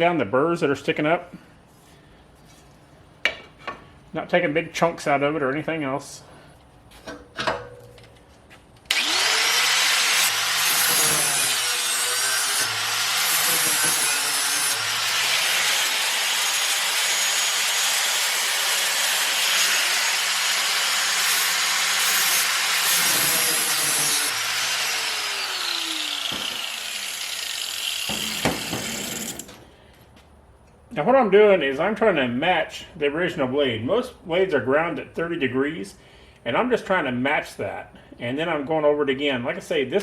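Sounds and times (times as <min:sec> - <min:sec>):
grinder grinding steel: 0:08.9 - 0:29.6.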